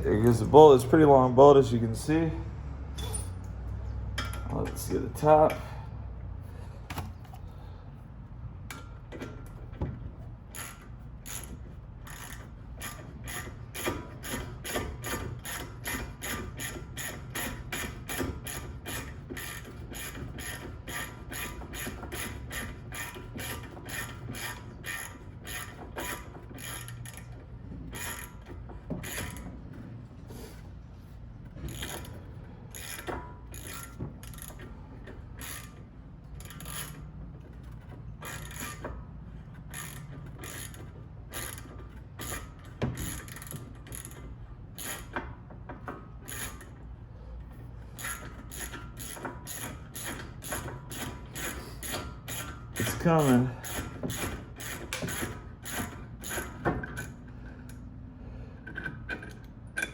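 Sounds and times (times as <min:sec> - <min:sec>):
ratchet wrench clicking: 0:10.5 - 0:29.5, 0:31.6 - 0:46.8, 0:47.9 - 0:57.8.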